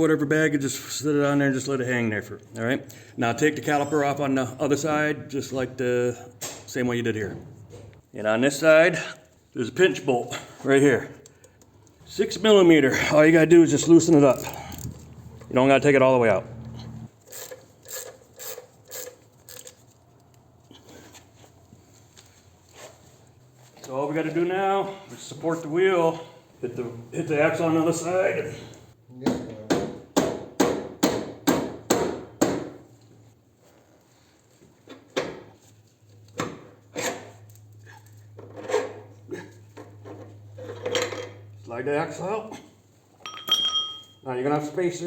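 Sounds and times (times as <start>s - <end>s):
ratchet wrench clicking: 14.2s - 15.5s, 17.2s - 19.9s.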